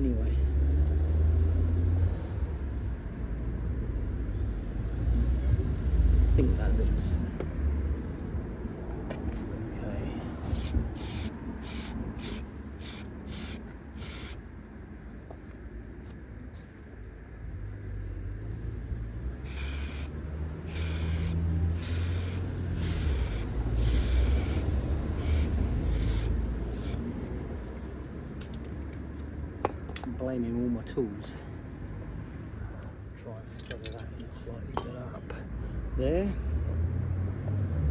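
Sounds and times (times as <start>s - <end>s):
aerosol can spraying: 10.4s - 14.4s, 19.5s - 20.1s, 20.7s - 27.0s.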